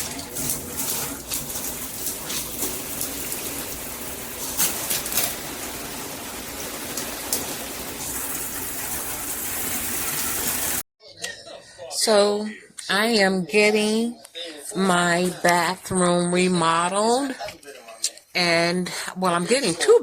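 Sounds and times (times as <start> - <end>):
shower water splashing: 0.0 - 10.8.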